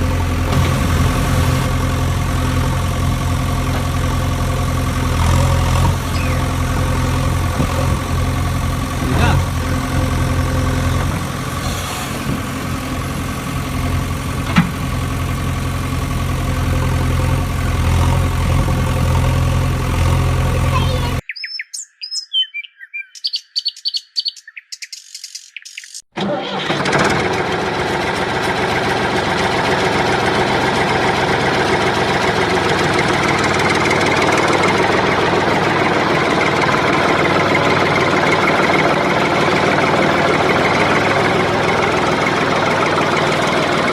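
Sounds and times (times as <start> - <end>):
engine idling: 0.0 - 21.2, 26.2 - 43.9
high chirping clicks: 23.2 - 26.1.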